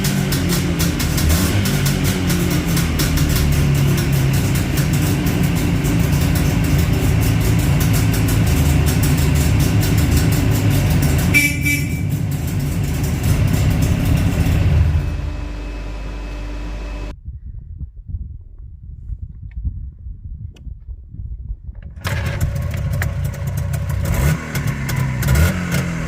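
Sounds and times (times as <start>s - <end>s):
motorcycle engine running: 0.0s - 17.1s, 21.8s - 26.0s
short horn beep: 11.3s - 12.3s.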